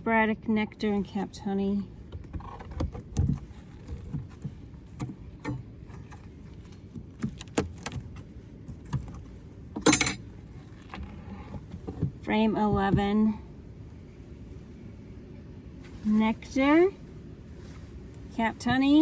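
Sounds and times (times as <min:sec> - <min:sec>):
wooden frames clicking and knocking: 0:02.1 - 0:13.1.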